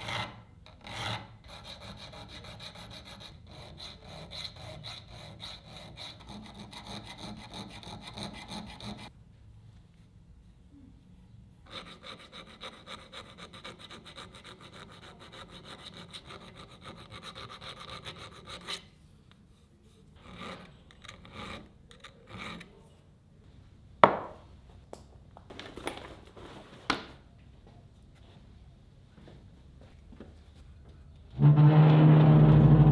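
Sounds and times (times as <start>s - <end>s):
hand file rasping on steel: 0.0s - 9.1s, 11.7s - 18.9s, 20.2s - 22.8s.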